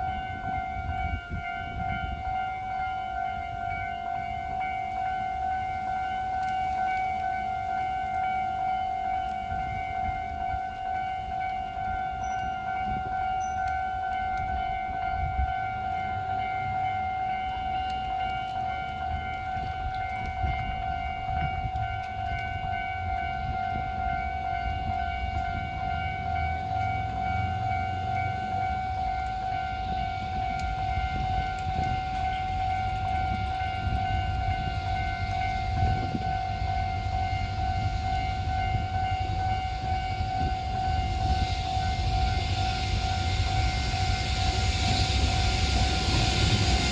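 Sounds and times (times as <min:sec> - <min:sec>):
level-crossing warning alarm ringing: 0:00.0 - 0:46.9
low rumble: 0:26.4 - 0:46.9.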